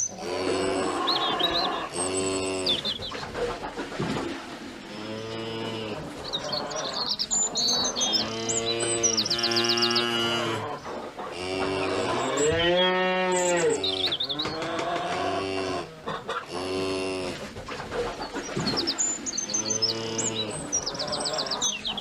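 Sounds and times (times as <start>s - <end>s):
cows mooing: 0.0s - 2.9s, 4.8s - 7.0s, 7.9s - 17.5s, 19.4s - 21.7s
small birds chirping: 0.0s - 22.0s.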